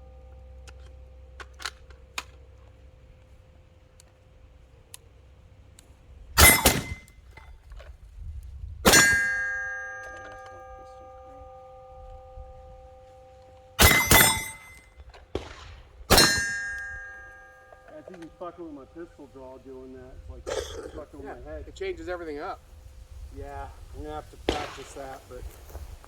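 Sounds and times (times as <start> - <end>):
pistol shots: 6.4 - 7.1, 8.9 - 10.5, 13.8 - 18.4, 24.5 - 25.8
steel plate ringing: 6.4 - 7.4, 8.8 - 21.3.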